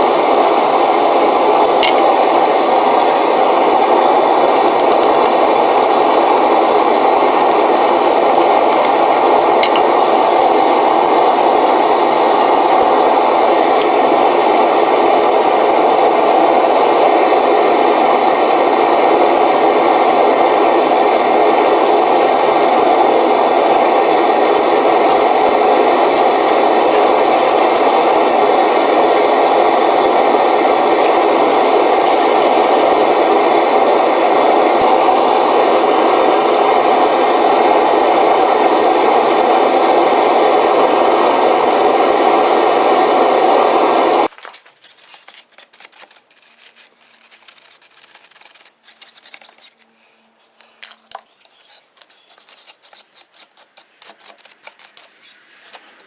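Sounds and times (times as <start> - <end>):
motor-driven shop tool running: 0.0 - 44.3.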